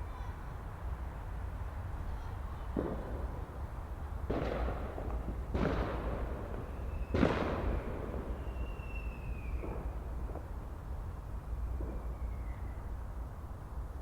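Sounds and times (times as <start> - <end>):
fireworks booming and crackling: 2.2 - 13.8
faint thin whistle: 8.4 - 9.6, 11.8 - 13.0.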